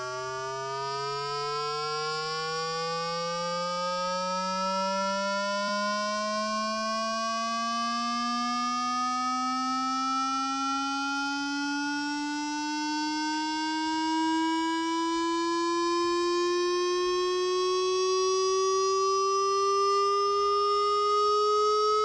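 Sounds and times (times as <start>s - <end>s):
electronic hum rising in pitch: 0.0s - 4.2s, 10.6s - 22.0s.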